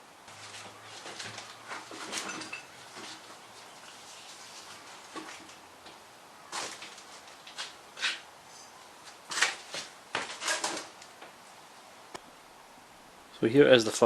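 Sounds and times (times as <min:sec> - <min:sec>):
metal clunks and scrapes: 0:00.6 - 0:03.4, 0:10.2 - 0:10.9.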